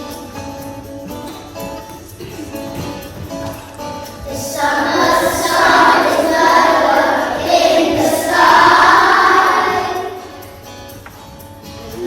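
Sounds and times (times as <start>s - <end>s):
children singing together: 4.2s - 10.6s.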